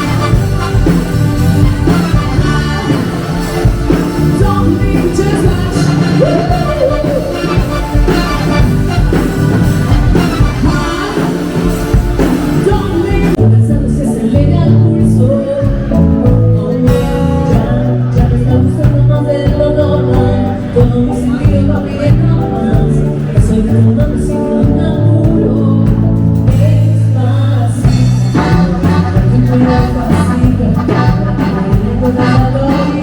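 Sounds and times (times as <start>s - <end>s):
steady beat: 0.0s - 13.4s, 27.9s - 33.0s
guitar: 0.0s - 33.0s
person singing: 0.0s - 33.0s.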